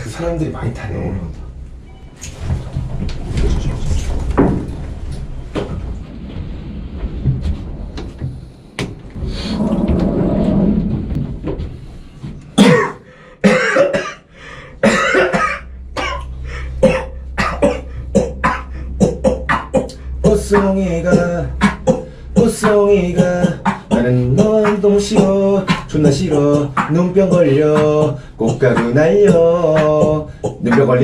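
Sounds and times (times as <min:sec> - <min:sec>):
low steady hum: 0:00.0 - 0:31.0
people coughing in rhythm: 0:12.5 - 0:31.0.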